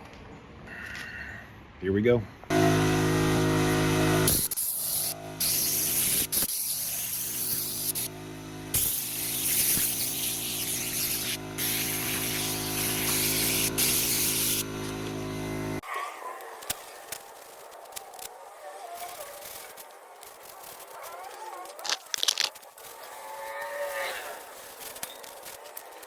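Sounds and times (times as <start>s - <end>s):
motor running: 2.5s - 15.8s
spraying hiss: 3.3s - 15.0s.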